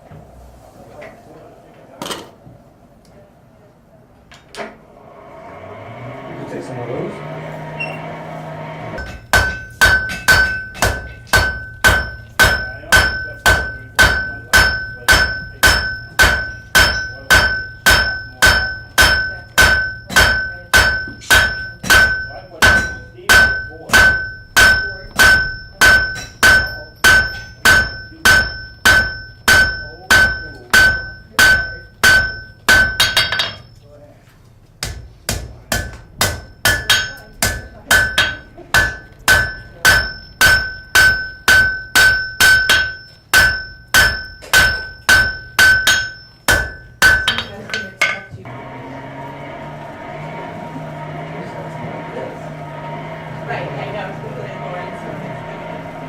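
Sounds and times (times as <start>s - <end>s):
hammer striking metal on anvil: 9.0s - 33.8s, 34.8s - 48.4s.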